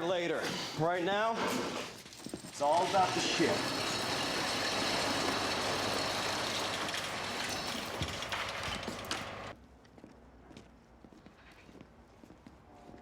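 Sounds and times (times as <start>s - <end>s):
metal clanks: 2.3s - 9.5s
mechanical rumble: 3.5s - 9.5s.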